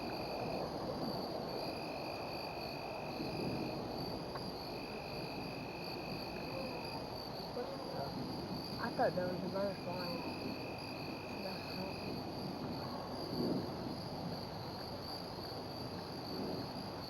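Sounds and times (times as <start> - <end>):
high steady insect trill: 0.0 - 17.0
lower insect trill: 0.0 - 17.0.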